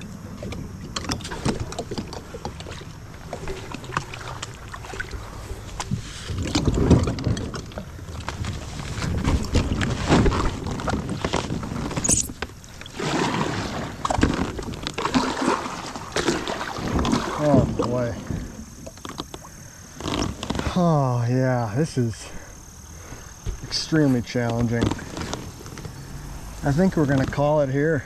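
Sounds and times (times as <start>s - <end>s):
paddle splashes: 0.0s - 28.0s
heavy thumps: 22.4s - 27.6s
hull knocking and scraping on rocks: 22.4s - 27.9s.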